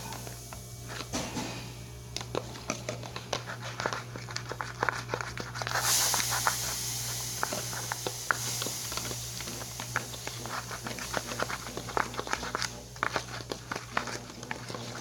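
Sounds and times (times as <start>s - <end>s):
steady hiss: 5.7s - 12.1s.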